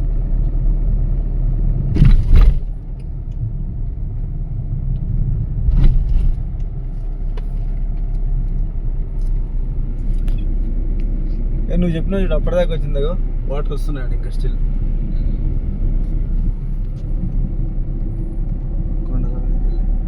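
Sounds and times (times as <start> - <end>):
car driving rumble: 0.0 - 20.0
loud thump: 1.9 - 2.8, 5.6 - 6.4.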